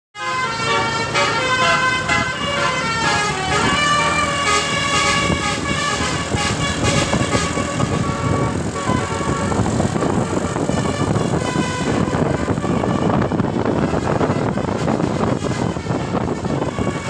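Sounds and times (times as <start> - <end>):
musical bus horn melody: 0.2 - 17.0
rough noisy rumble: 0.2 - 17.0.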